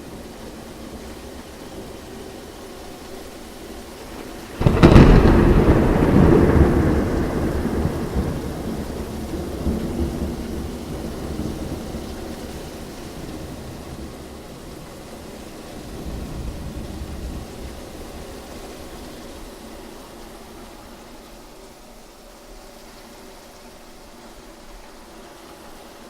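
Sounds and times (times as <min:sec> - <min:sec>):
rain hissing: 0:00.0 - 0:26.0
thunderclap and rolling rumble: 0:04.2 - 0:14.9, 0:15.8 - 0:19.2.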